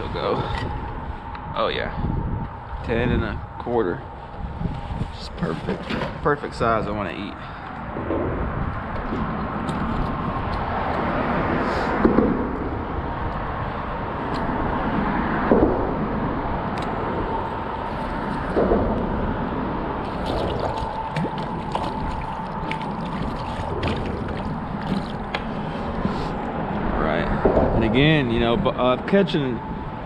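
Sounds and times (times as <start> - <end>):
faint steady hum: 0.0 - 30.0
water sloshing around boat: 17.4 - 27.8.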